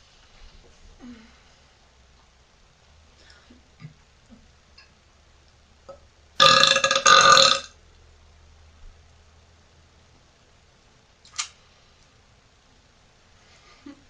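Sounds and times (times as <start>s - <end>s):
woman burping loudly: 6.4s - 7.7s.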